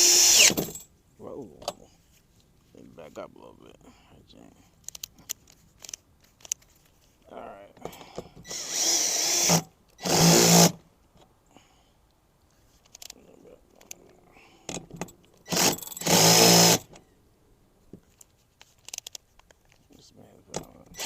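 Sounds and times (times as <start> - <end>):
power drill driving bolts: 0.0 - 0.8, 7.9 - 10.8, 14.7 - 17.0.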